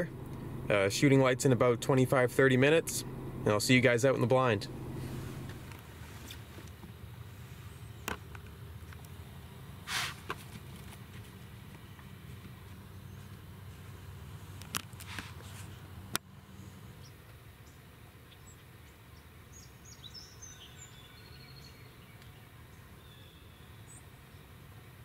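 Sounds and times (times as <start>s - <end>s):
low background hum: 0.0s - 9.8s
faint bird chirps: 19.5s - 24.4s.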